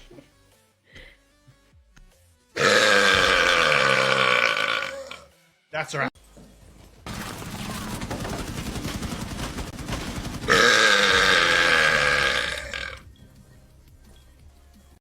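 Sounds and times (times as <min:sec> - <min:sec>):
man burping loudly: 0:02.6 - 0:05.3, 0:10.5 - 0:13.0.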